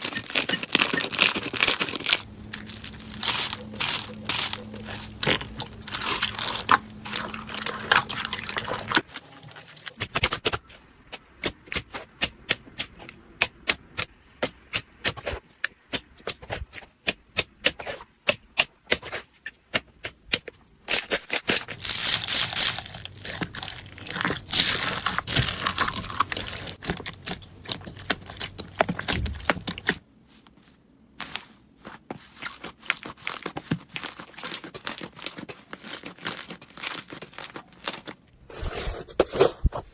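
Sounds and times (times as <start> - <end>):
slime squeezed crackling: 0.0 - 9.1, 21.7 - 30.0.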